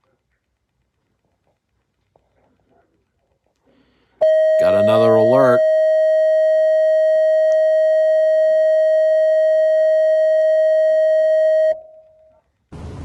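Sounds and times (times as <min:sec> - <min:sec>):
loud steady electronic tone: 0:04.2 - 0:13.0.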